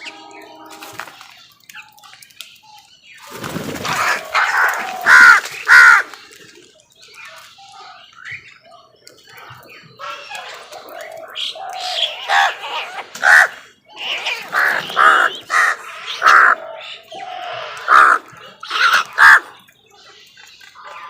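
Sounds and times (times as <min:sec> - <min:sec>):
crows cawing: 0:03.8 - 0:06.2, 0:11.5 - 0:19.6.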